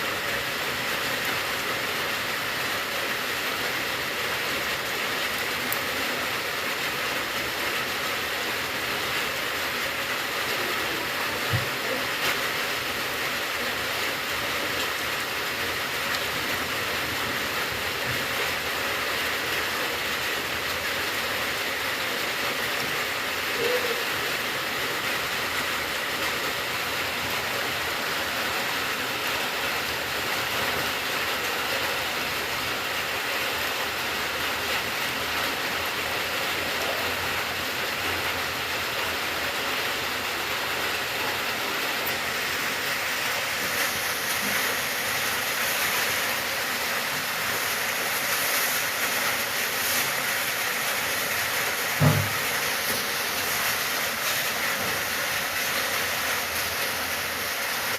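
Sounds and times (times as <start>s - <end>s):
steady rain falling: 0.0s - 57.9s
brief low thump: 52.0s - 52.3s.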